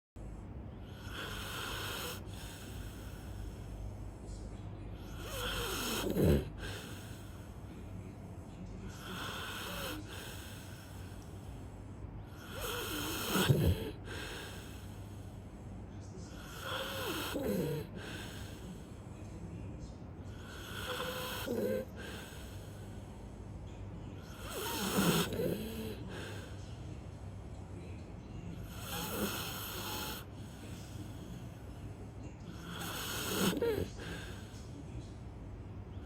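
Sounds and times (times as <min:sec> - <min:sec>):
dog snoring: 0:00.8 - 0:03.8, 0:05.0 - 0:07.9, 0:08.9 - 0:11.6, 0:12.3 - 0:15.4, 0:16.3 - 0:19.1, 0:20.3 - 0:23.1, 0:24.2 - 0:26.6, 0:28.6 - 0:31.8, 0:32.4 - 0:34.7.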